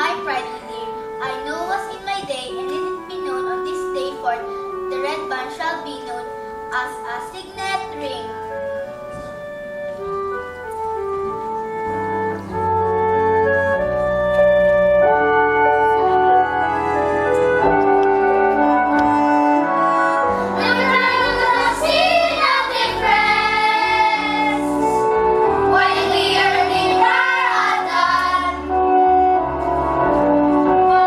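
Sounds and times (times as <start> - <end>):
instrumental accompaniment: 0.0 - 31.0
young voices singing: 20.4 - 28.8.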